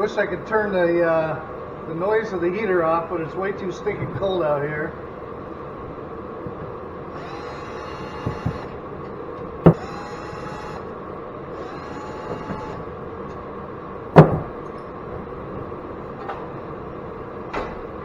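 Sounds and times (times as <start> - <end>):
space heater running: 0.0 - 18.0
small electric motor whining: 7.1 - 8.8, 9.7 - 13.0.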